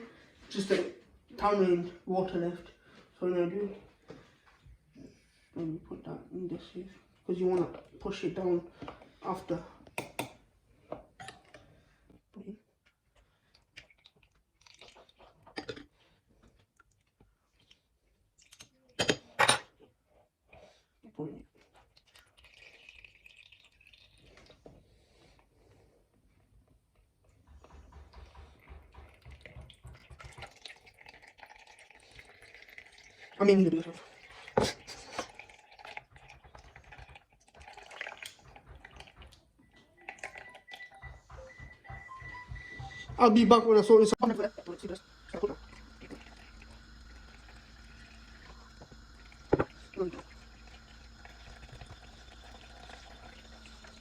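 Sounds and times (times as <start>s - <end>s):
liquid dripping: 21.8s - 24.8s, 29.1s - 39.4s, 44.2s - 54.0s.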